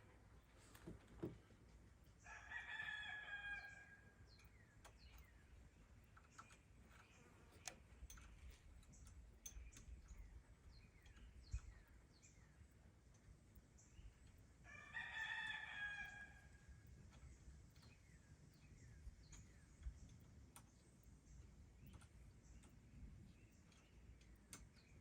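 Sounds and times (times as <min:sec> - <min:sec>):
rooster crowing: 0:02.2 - 0:04.1, 0:14.7 - 0:16.5
bird chirps: 0:04.3 - 0:12.8.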